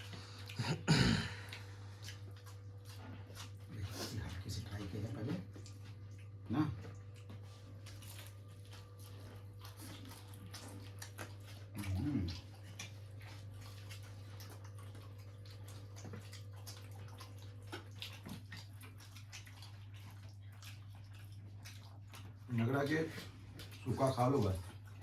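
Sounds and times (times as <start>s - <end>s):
wet chewing: 0.0s - 25.0s.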